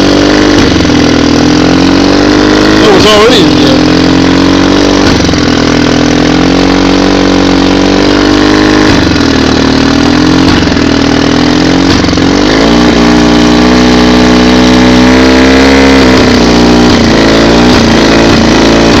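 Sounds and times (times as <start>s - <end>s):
outboard engine running and coughing: 0.0s - 7.8s.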